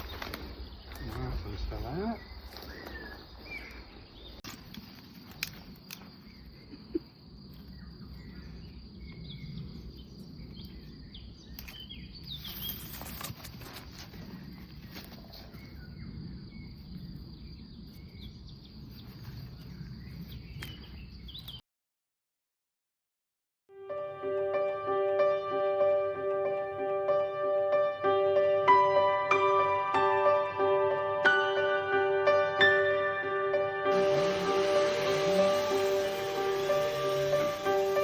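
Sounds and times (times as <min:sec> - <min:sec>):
high insect drone: 0:00.0 - 0:03.9, 0:31.8 - 0:38.0
small birds chirping: 0:00.0 - 0:21.6, 0:33.9 - 0:38.0.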